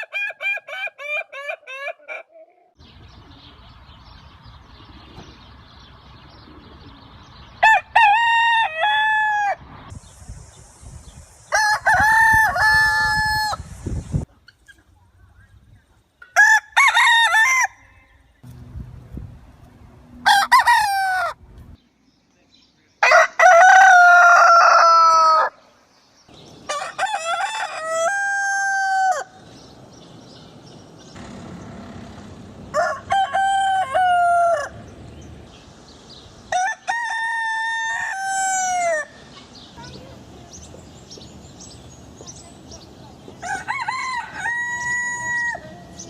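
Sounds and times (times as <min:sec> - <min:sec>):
roosters crowing: 0:00.0 - 0:02.3, 0:07.6 - 0:09.8, 0:11.5 - 0:13.8, 0:16.2 - 0:18.3, 0:20.0 - 0:21.5, 0:23.0 - 0:25.7, 0:26.3 - 0:39.3, 0:43.4 - 0:46.0.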